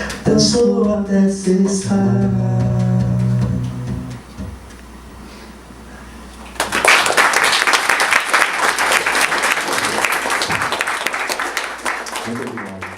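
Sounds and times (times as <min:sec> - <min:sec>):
low room hum: 0:00.0 - 0:12.9
audience applause: 0:06.6 - 0:12.9.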